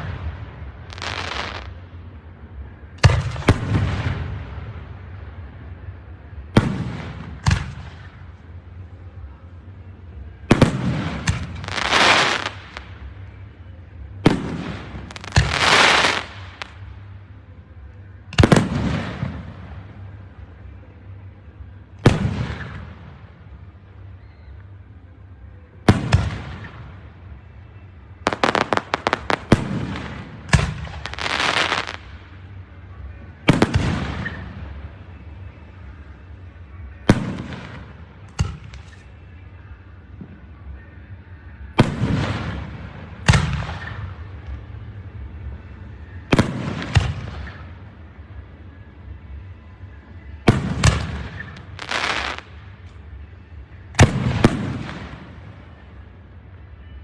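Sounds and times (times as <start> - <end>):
firework crackle: 0.0 - 1.9, 10.5 - 13.5, 14.1 - 17.1, 28.2 - 32.4, 50.4 - 53.1.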